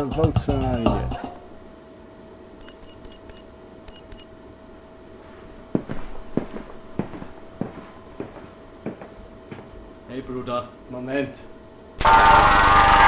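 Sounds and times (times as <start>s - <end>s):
faint steady hum: 0.0s - 13.0s
footsteps: 5.1s - 10.6s.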